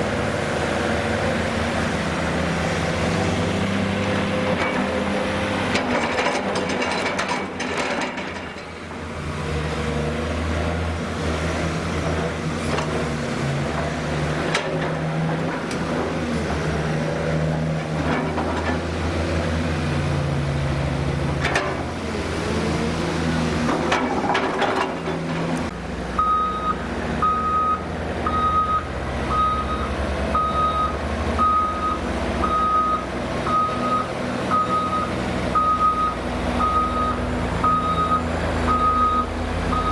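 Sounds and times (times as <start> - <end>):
heavy diesel engines running: 0.0 - 39.9
reversing alarm beeping: 26.2 - 39.9.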